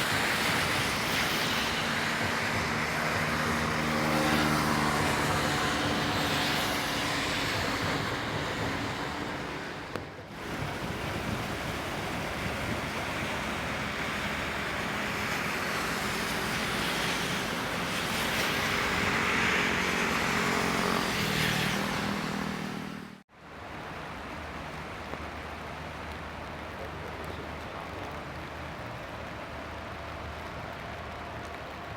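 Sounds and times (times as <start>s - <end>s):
traffic rushing: 0.0s - 23.2s.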